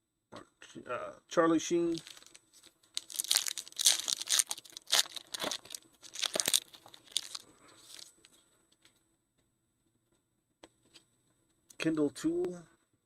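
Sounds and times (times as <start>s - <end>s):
foil wrapper crinkling and tearing: 1.9s - 8.3s
cards being handled: 1.9s - 8.4s.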